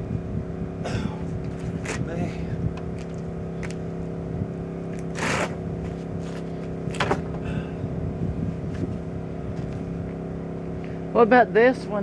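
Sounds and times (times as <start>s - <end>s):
small engine humming: 0.0s - 12.0s
short rushing noises: 5.1s - 5.6s.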